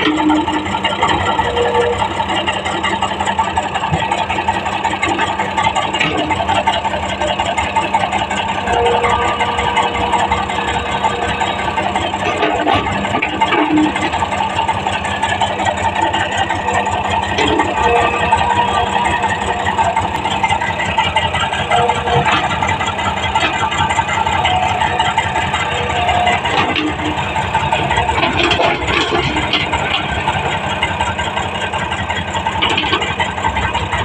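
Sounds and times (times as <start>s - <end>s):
diesel engine running: 0.0s - 34.0s
steady whine: 0.0s - 34.0s.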